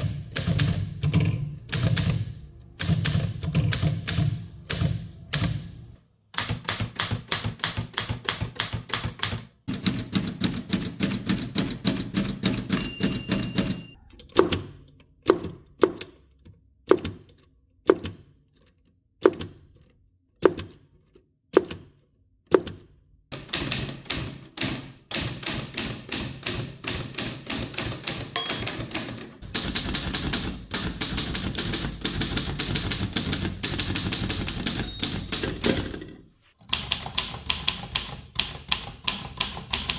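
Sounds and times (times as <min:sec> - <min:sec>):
typewriter keystrokes: 0:00.0 - 0:14.7, 0:23.4 - 0:36.1, 0:36.7 - 0:39.9.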